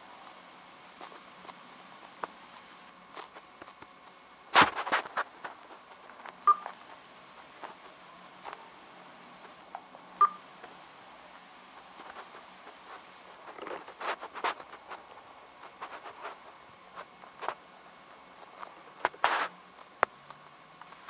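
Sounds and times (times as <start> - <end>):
phone speaker hissing: 0.0 - 2.9, 6.4 - 9.6, 10.2 - 13.4
short beep: 6.4 - 6.8, 10.2 - 10.5.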